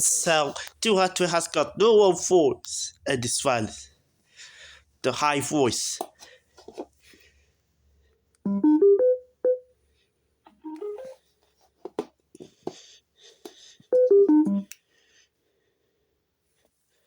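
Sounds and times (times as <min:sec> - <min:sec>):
electronic prompt chimes: 0:08.5 - 0:09.6, 0:10.6 - 0:11.2, 0:13.9 - 0:14.7.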